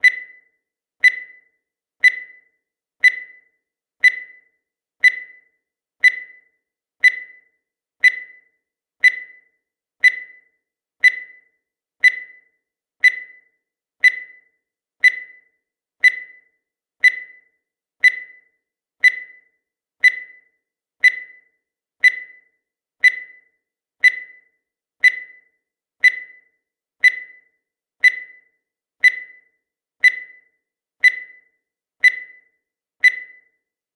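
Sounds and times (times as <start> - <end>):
short high electronic beeps: 32.0 - 33.5.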